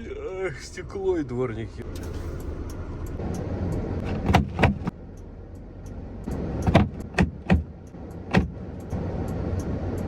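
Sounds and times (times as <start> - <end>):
engine and road drone: 0.0 - 10.0
knocks and thuds in truck cab: 4.1 - 4.9, 6.6 - 7.7, 8.3 - 8.6.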